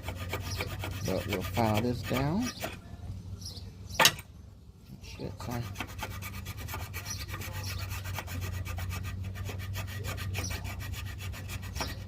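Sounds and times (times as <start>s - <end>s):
hand file rasping on metal: 0.0s - 2.8s, 5.4s - 12.0s.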